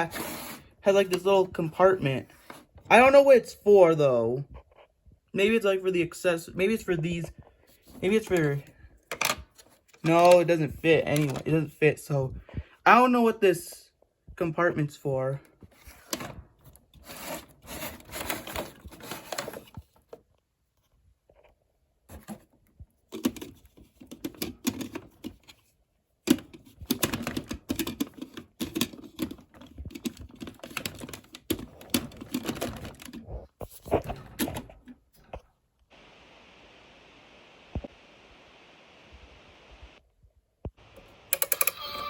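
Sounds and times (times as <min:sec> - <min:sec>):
plastic toy clicks and rattles: 0:41.3 - 0:42.0.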